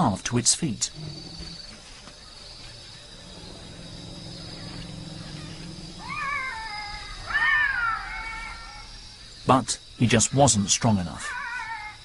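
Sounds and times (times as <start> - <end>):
insects trilling: 0.0 - 12.0
elephant calf squealing: 0.9 - 9.0.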